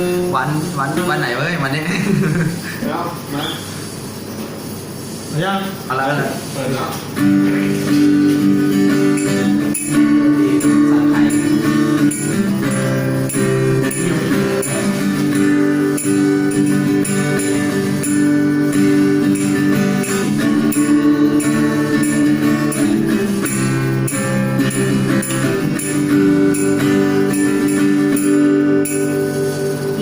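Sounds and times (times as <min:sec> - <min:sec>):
high percussion beat: 0:00.0 - 0:30.0.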